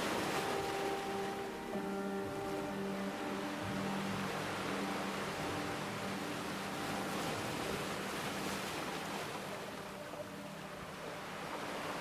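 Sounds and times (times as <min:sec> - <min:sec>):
ocean waves: 0:00.0 - 0:12.0
soft ambient music: 0:00.0 - 0:12.0.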